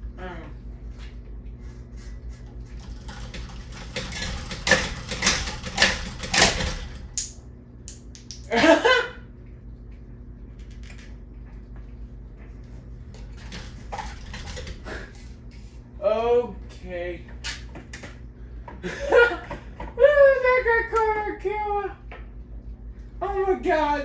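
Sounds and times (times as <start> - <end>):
ceiling fan parts clattering: 0.0 - 9.2, 9.9 - 24.0
steady low hum: 0.0 - 24.0.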